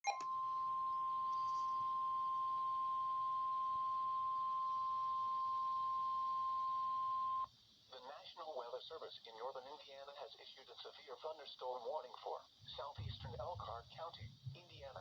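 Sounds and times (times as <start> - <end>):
steady alarm tone: 0.2 - 7.5.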